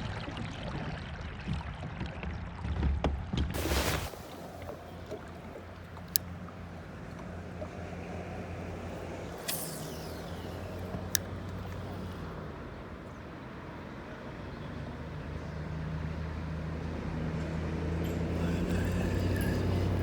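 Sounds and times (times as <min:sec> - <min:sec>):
low mechanical hum: 0:03.6 - 0:20.0
sharp click: 0:08.9 - 0:12.5.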